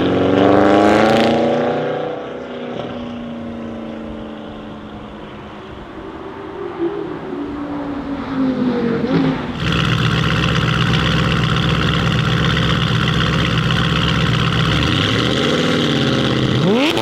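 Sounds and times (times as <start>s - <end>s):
car engine revving: 9.4s - 17.0s
steady high-revving engine note: 9.6s - 17.0s.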